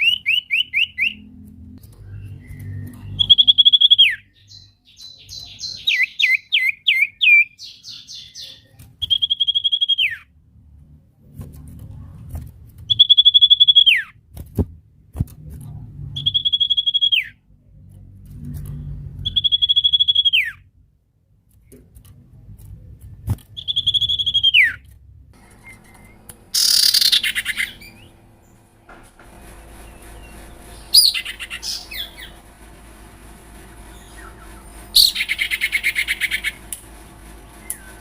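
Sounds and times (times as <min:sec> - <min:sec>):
low background rumble: 0:25.0 - 0:38.0
harsh scratchy owl call: 0:25.4 - 0:28.2, 0:29.6 - 0:32.5, 0:33.7 - 0:36.7
owl call whistles: 0:25.6 - 0:28.1.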